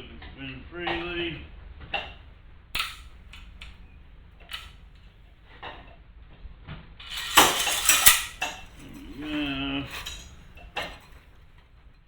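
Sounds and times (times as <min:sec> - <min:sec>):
metal on metal clatter: 0:02.8 - 0:03.8, 0:04.4 - 0:04.8, 0:07.0 - 0:11.4
metallic clicks and clinks: 0:02.8 - 0:03.8, 0:04.5 - 0:04.8, 0:07.0 - 0:09.2, 0:09.9 - 0:11.2.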